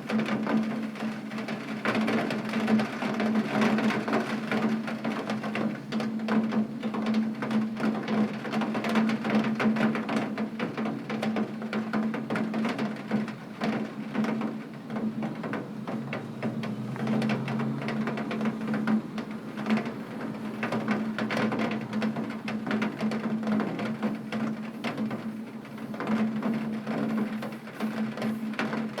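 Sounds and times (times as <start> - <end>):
rain on a tin roof: 0.0 - 29.0.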